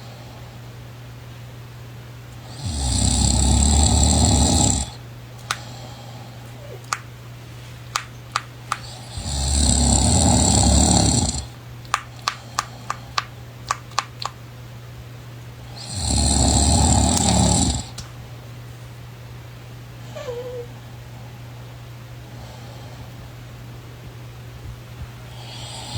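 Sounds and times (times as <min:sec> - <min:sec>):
person snoring loudly: 0:02.5 - 0:05.7, 0:08.8 - 0:11.6, 0:15.7 - 0:18.0, 0:25.4 - 0:25.9
short sharp clicks: 0:07.9 - 0:09.0, 0:11.9 - 0:14.4.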